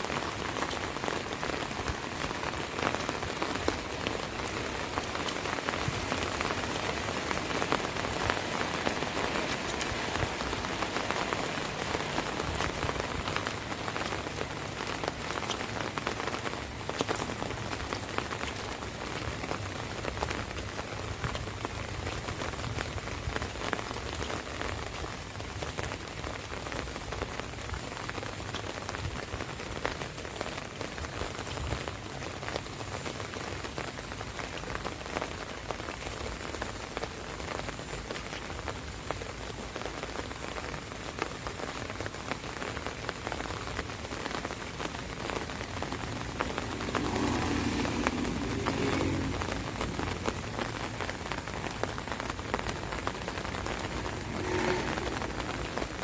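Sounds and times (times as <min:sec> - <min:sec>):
rain on an umbrella: 0:00.0 - 0:56.0.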